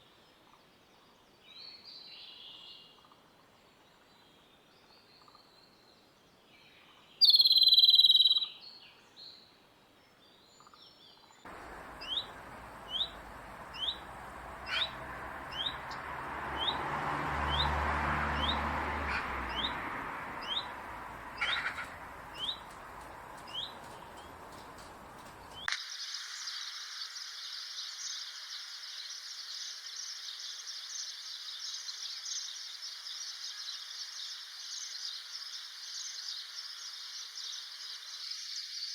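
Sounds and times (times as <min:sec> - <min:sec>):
bird chirping upward: 0:07.2 - 0:08.6, 0:11.5 - 0:38.8
loud whistled bird call: 0:07.2 - 0:08.6, 0:11.5 - 0:16.8, 0:18.3 - 0:28.8
background hiss: 0:11.5 - 0:38.9.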